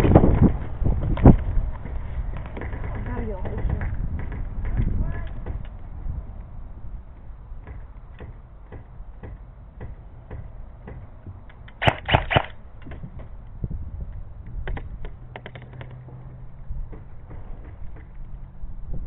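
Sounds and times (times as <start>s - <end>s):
airsoft gun shots: 11.8s - 12.6s.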